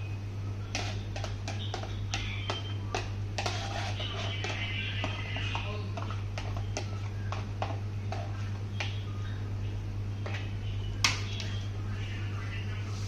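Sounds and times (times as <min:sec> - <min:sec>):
spoon scraping and clinking: 0:03.4 - 0:04.7.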